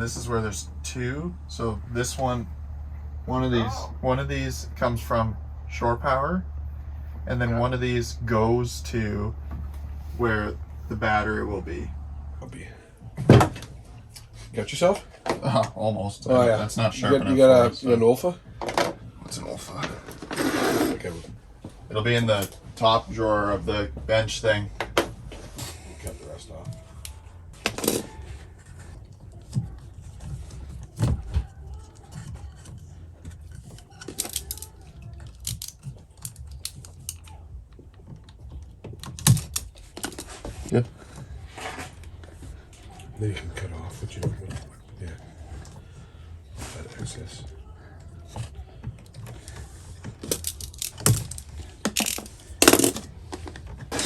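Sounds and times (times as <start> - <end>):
wire cutters clicking and snipping: 32.4 - 40.2, 50.2 - 53.0.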